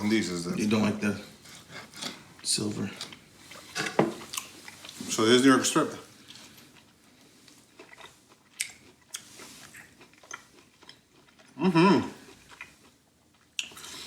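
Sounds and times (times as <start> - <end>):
person chewing: 1.3 - 5.2, 6.0 - 14.0
person humming approval: 11.6 - 12.2.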